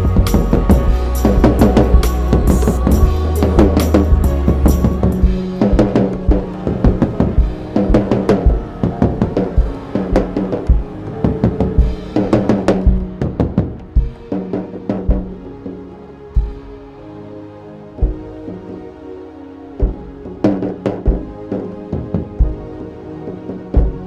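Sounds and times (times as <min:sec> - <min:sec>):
low held tones: 0:00.0 - 0:14.3
heavy drum music: 0:00.0 - 0:15.6, 0:16.4 - 0:16.9, 0:18.0 - 0:18.5, 0:19.8 - 0:22.8, 0:23.7 - 0:24.0.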